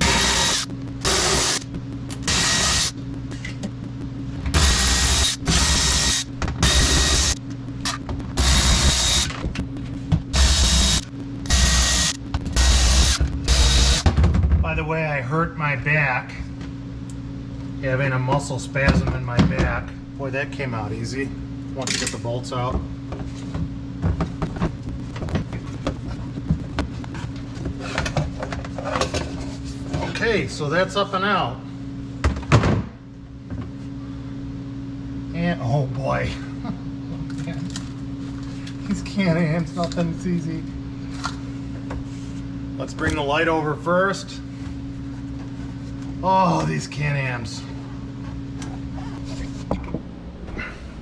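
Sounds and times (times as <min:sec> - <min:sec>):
cordless electric ratchet spinning: 0:00.0 - 0:14.1
steady low hum: 0:00.0 - 0:21.8, 0:22.4 - 0:32.2, 0:33.0 - 0:51.0.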